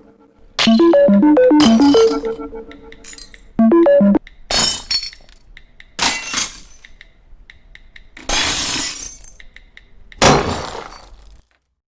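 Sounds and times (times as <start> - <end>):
glass shattering: 1.6 - 2.4, 4.5 - 5.4, 6.0 - 6.8, 8.3 - 9.4.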